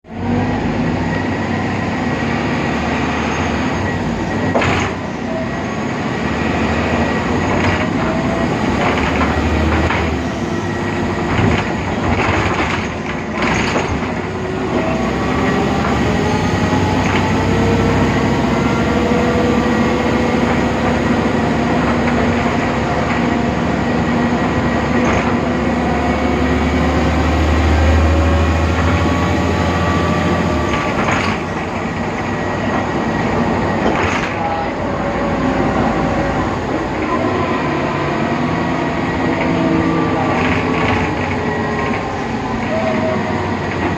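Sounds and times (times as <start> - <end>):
bus engine and gearbox whine: 0.1 - 43.9
knocks and rattles: 8.8 - 10.2, 11.3 - 14.3.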